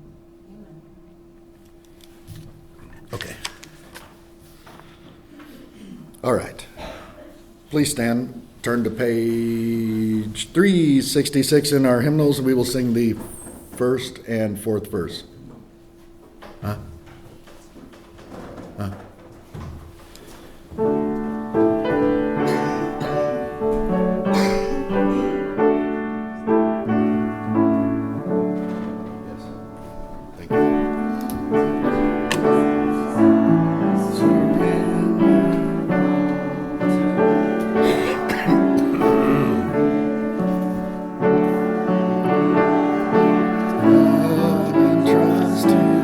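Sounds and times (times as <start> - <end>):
piano playing a hymn: 8.8 - 13.8, 20.5 - 46.0.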